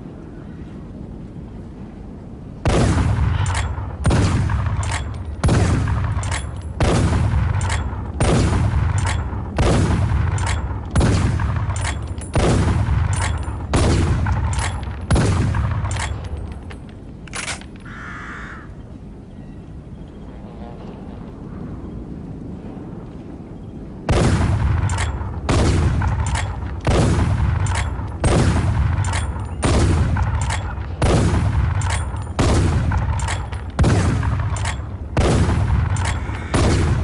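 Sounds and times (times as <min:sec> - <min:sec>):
rifle shots echoing: 0:02.6 - 0:17.6, 0:24.1 - 0:37.0
rifle lever clicking: 0:15.8 - 0:17.9.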